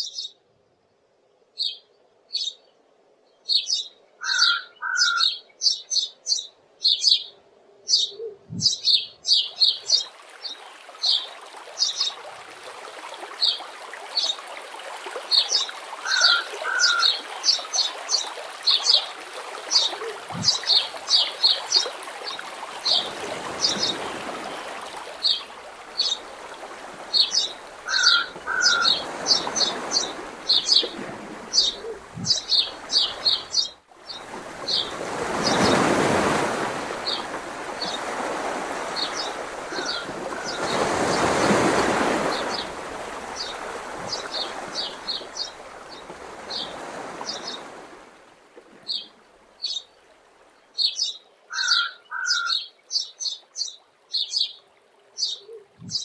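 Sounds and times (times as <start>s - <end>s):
waves washing: 9.5s - 48.3s
small birds chirping: 15.2s - 47.6s.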